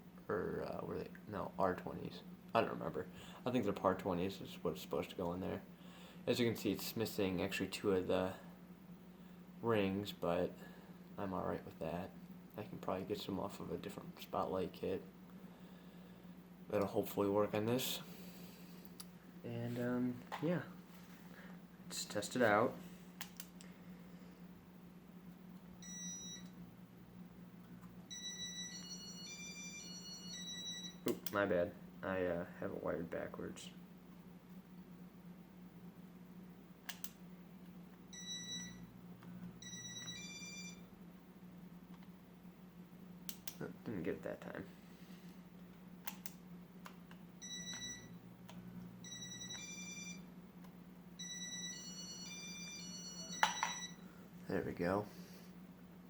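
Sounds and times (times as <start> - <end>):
low steady hum: 0.0 - 56.0.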